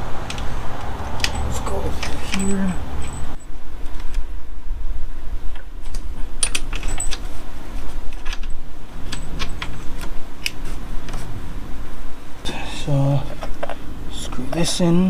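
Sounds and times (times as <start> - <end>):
steady low rumble: 0.0 - 14.4
metal tools clicking and clinking: 1.1 - 3.5, 6.4 - 7.3.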